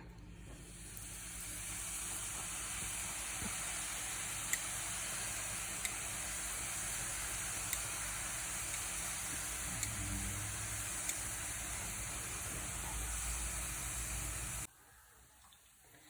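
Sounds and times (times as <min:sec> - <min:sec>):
dough deep-frying in oil: 0:00.0 - 0:16.0
small oil pops: 0:05.8 - 0:06.0.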